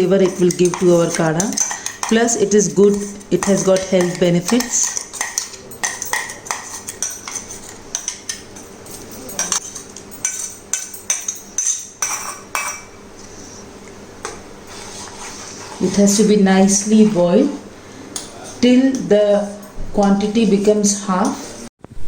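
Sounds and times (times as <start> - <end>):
metal spoon clinking on pot: 0.0 - 12.9.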